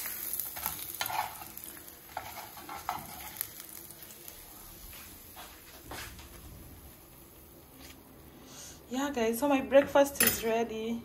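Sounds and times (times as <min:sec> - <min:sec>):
eggs sizzling in a frying pan: 0:00.0 - 0:10.1
spatula scraping and tapping pan: 0:00.4 - 0:03.6.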